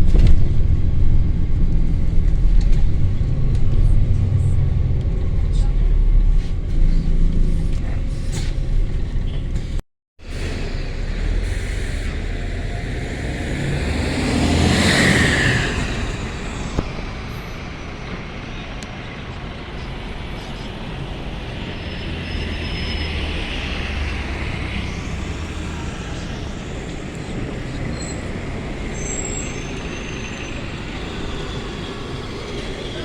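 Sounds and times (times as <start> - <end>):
bus driving past: 0.0 - 33.0
road rumble: 0.0 - 33.0.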